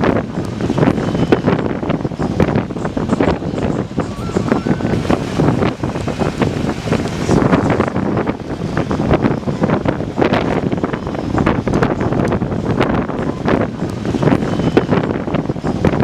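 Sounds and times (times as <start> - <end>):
wind buffeting microphone: 0.0 - 16.0
vehicle driving: 4.2 - 8.4.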